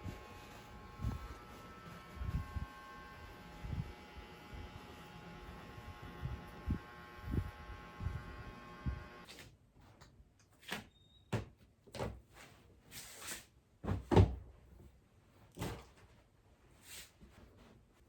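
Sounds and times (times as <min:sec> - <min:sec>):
electrical hum: 0:00.0 - 0:09.3.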